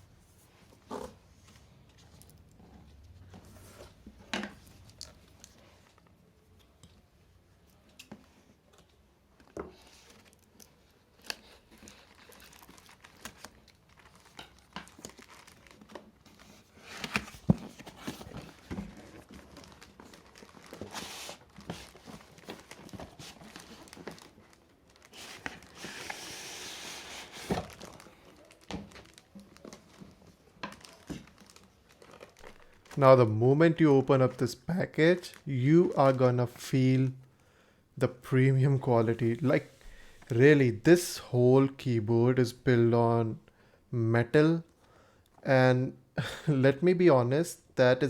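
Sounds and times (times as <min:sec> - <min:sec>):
packaging crinkling and tearing: 0:10.0 - 0:33.0.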